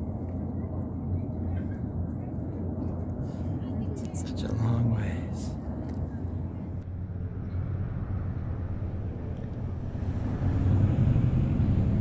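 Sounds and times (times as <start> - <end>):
wind buffeting microphone: 5.6 - 12.0.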